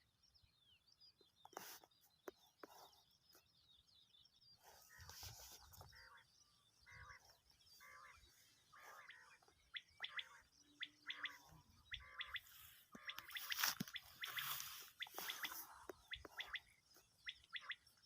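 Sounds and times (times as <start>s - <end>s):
quail calling: 4.8s - 18.0s.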